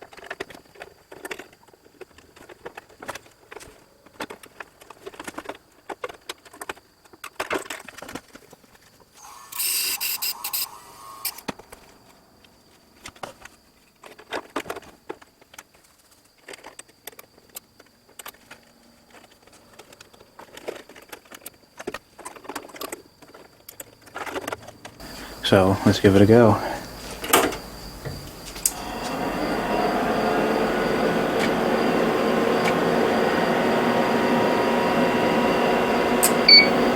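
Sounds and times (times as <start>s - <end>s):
scraping hiss: 25.0s - 31.8s.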